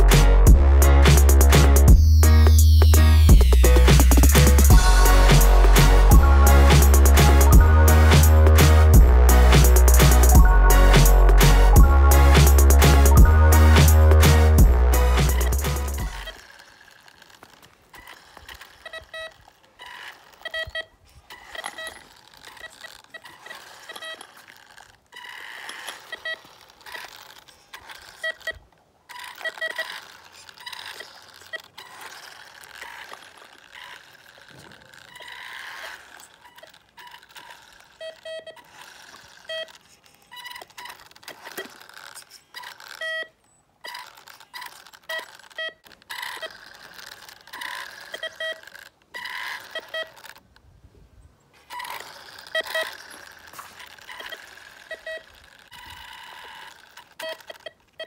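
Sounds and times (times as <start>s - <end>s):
metal detector beeps: 11.8s - 16.6s, 18.0s - 24.5s, 25.2s - 27.2s, 27.8s - 50.3s, 51.7s - 58.0s
faint rough noise: 13.8s - 58.0s.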